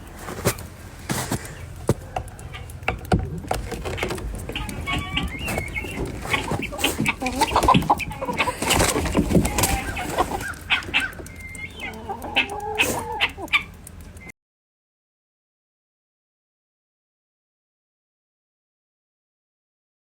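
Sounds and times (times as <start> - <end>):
animal calls: 0.4 - 14.3.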